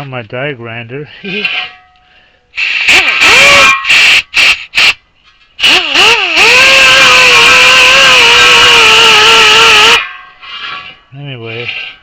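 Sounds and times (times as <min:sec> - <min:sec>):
die grinder whining: 0:02.9 - 0:04.0, 0:05.6 - 0:10.0.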